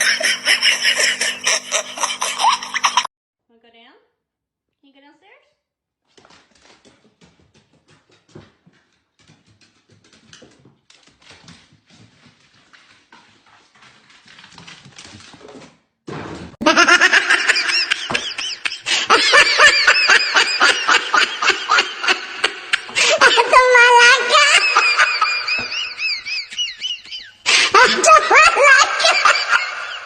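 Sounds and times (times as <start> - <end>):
loud high laughter: 0.0 - 3.1, 16.6 - 30.0.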